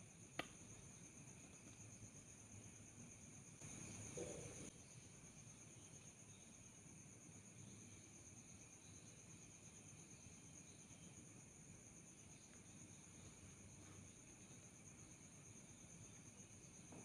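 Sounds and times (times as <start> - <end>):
crickets trilling: 0.0 - 17.0
low background hiss: 0.0 - 17.0.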